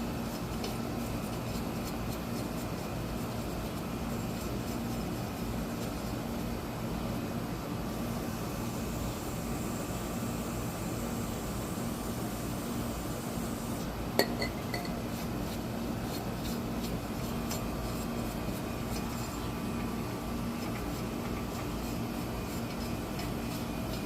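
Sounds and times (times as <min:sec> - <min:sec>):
steady background hum: 0:00.0 - 0:24.0
sharp metallic ringing chink: 0:14.2 - 0:15.0.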